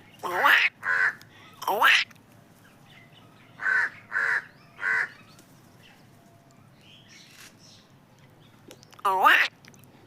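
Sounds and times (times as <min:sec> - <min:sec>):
crow cawing: 0:00.3 - 0:01.2, 0:03.6 - 0:05.2.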